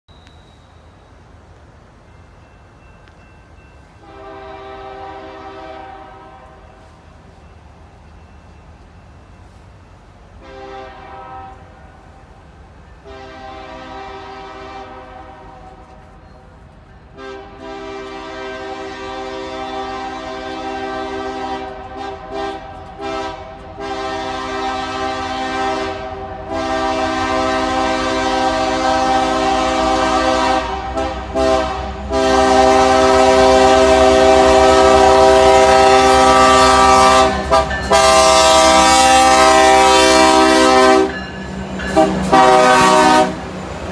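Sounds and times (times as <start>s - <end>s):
train rumble: 0.1s - 43.9s
train horn blasts: 4.0s - 7.0s, 10.3s - 12.2s, 13.0s - 16.3s, 17.1s - 43.6s.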